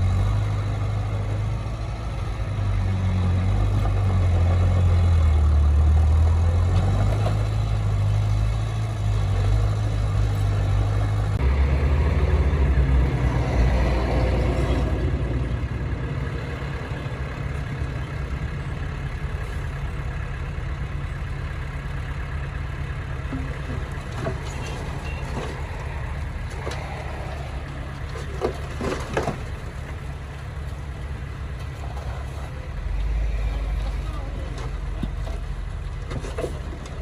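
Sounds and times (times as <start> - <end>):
diesel engine rumbling: 0.0 - 37.0
short knocks and squeaks: 24.3 - 25.7.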